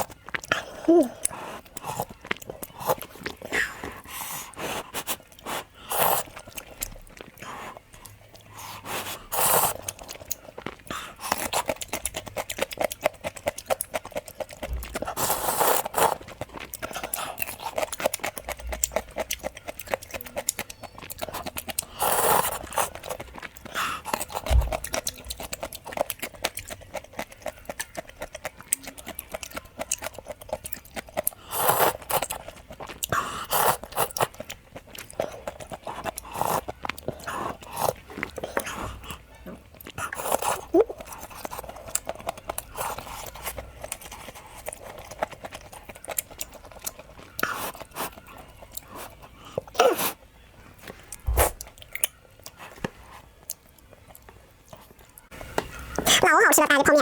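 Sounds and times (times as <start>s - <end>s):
slurping noodles: 0.0s - 6.5s, 7.4s - 10.1s, 15.0s - 17.9s, 21.8s - 24.5s
wet chewing: 0.0s - 57.0s.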